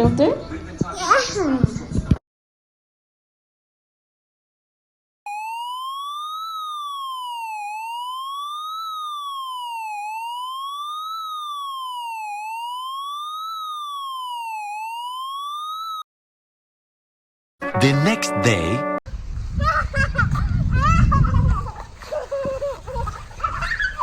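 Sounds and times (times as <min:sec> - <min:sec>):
tornado warning siren wailing: 0:05.3 - 0:16.0.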